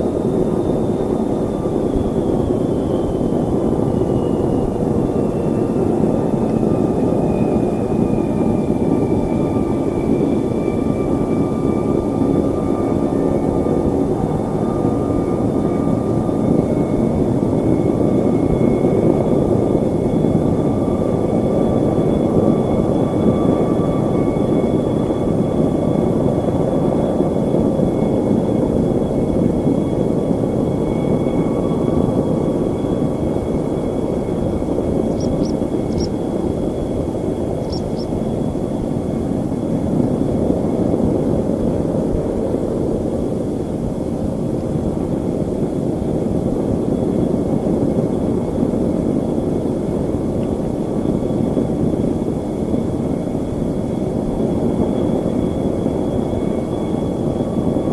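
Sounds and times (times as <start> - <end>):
airliner engines droning: 0.0 - 57.9
high whining tones: 34.0 - 38.4
faint ticks: 35.1 - 36.1, 37.6 - 38.1.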